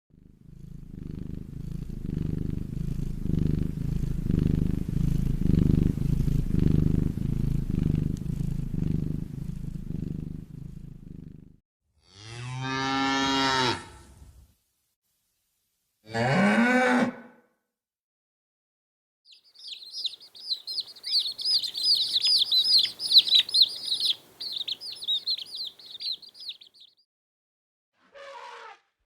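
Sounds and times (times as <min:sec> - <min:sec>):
low pulsing rumble: 0:00.3 - 0:11.3
cow mooing: 0:12.1 - 0:14.0, 0:16.1 - 0:17.3.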